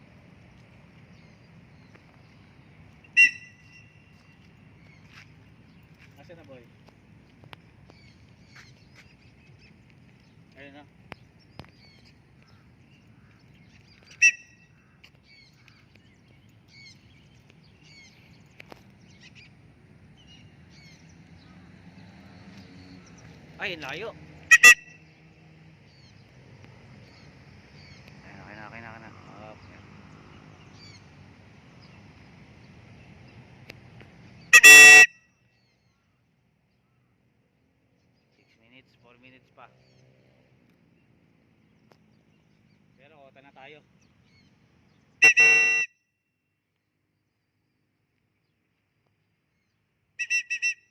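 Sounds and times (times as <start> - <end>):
bird squawk: 3.0 - 4.3, 11.8 - 15.9, 24.5 - 24.8, 45.2 - 45.9
horn honk: 3.1 - 4.4, 14.1 - 14.8, 24.5 - 25.1, 34.4 - 35.3, 45.2 - 46.1, 50.2 - 50.9.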